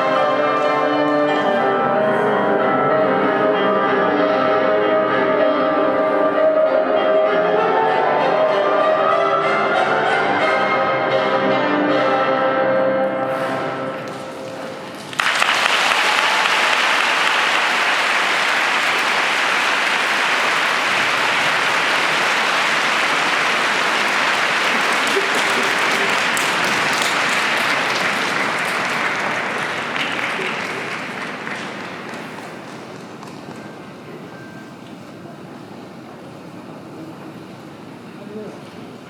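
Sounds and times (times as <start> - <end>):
audience applause: 13.3 - 33.6.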